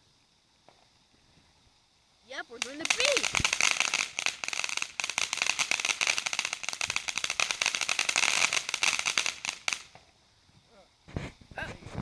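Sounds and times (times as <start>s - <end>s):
firework crackling pops: 2.4s - 10.2s, 11.0s - 12.0s.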